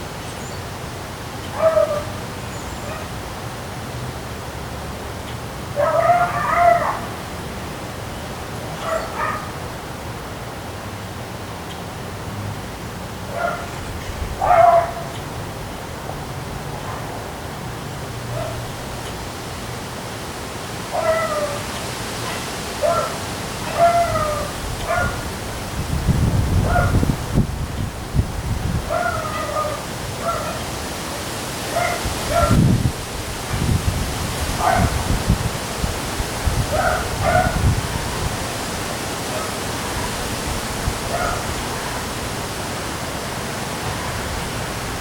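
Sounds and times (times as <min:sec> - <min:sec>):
wind and rain: 0:00.0 - 0:45.0
animal whining cry: 0:21.0 - 0:21.7, 0:22.8 - 0:25.2, 0:28.9 - 0:30.6
wind buffeting microphone: 0:23.7 - 0:30.4, 0:31.7 - 0:45.0.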